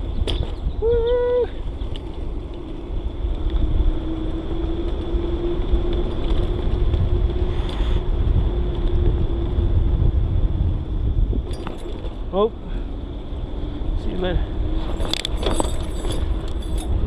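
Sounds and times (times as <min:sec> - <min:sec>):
bicycle tyre rumble: 0:00.0 - 0:17.0
wind buffeting microphone: 0:00.0 - 0:17.0.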